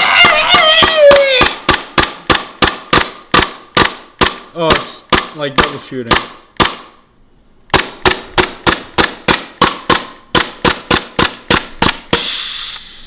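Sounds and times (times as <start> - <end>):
airsoft pistol shots: 0.8 - 7.0, 7.7 - 12.3
steady gas hiss: 12.1 - 13.0.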